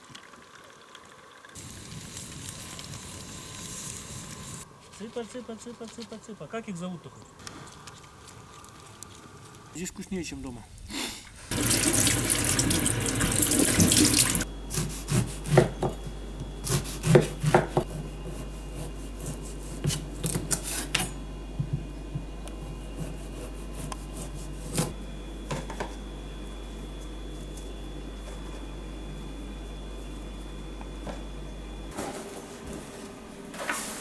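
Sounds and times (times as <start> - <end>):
liquid pouring: 11.5 - 14.5.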